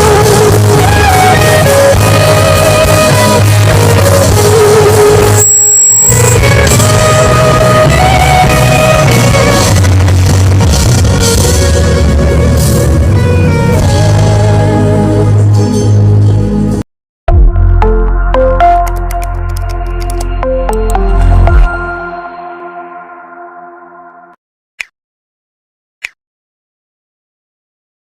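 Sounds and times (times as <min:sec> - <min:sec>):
worship band music with guitar: 0:00.0 - 0:16.8.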